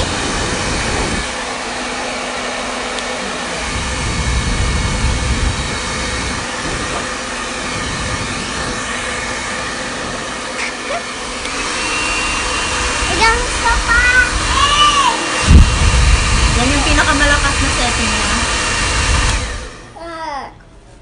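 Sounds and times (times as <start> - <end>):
wind buffeting microphone: 0.0 - 1.4, 3.6 - 10.4, 15.4 - 19.6
hair dryer blowing: 0.0 - 20.0.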